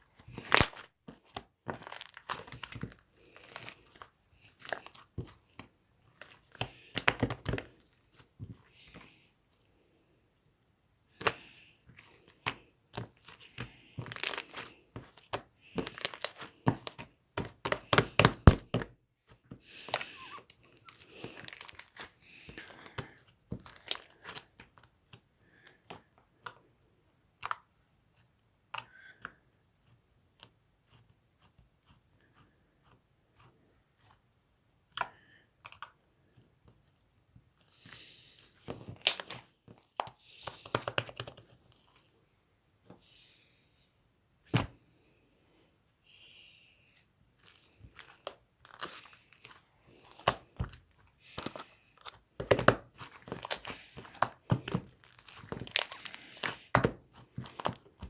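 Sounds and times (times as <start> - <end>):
slime crackling and popping: 0.3 - 7.9, 12.4 - 18.8, 38.9 - 41.4, 52.4 - 58.0.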